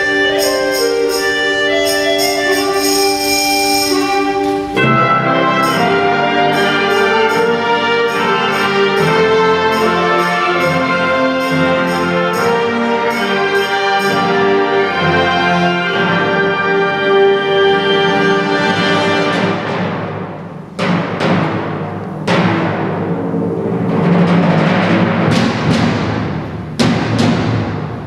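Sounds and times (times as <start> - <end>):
timpani: 0.0 - 28.0
wind band playing brass chords: 0.0 - 28.0
heavy ringing crashes: 22.2 - 26.9.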